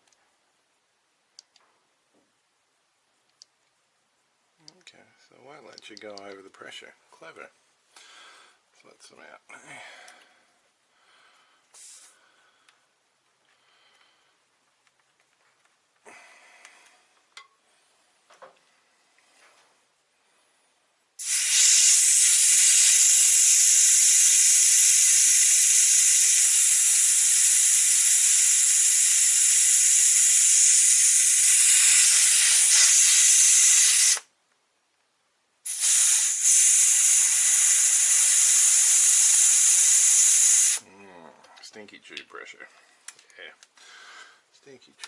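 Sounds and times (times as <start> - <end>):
air hissing out of a tyre: 11.7 - 12.2, 21.2 - 34.3, 35.6 - 40.8.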